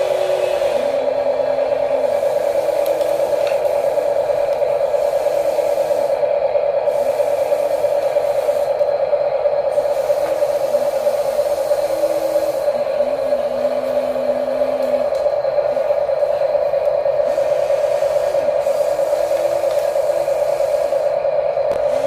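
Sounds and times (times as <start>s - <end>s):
lower motor tones: 0.0s - 22.0s
toy motors whirring: 9.8s - 15.3s.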